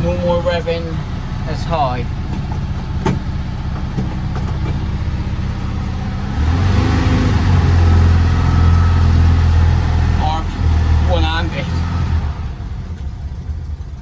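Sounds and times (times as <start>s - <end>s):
car engine running: 0.0s - 14.0s.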